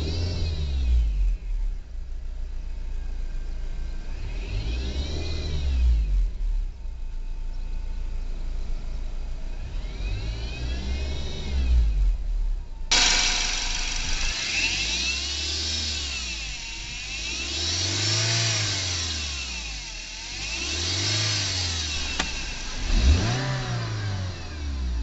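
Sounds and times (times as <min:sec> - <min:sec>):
car engine revving: 0:00.0 - 0:01.5, 0:03.8 - 0:06.8, 0:09.4 - 0:25.0
high engine whine: 0:09.9 - 0:25.0.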